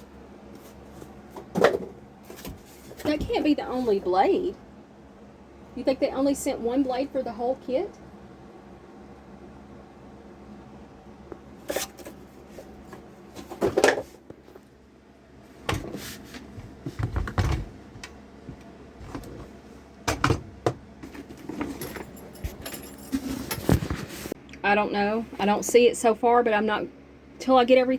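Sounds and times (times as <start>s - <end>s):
tool boxes knocking and rattling: 16.7s - 18.1s, 20.1s - 24.2s.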